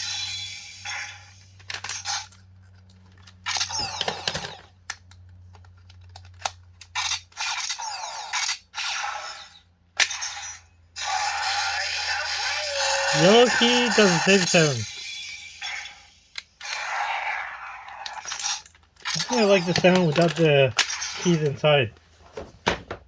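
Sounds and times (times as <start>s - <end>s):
toy blaster electronic blasts: 3.4s - 4.7s, 7.0s - 20.2s.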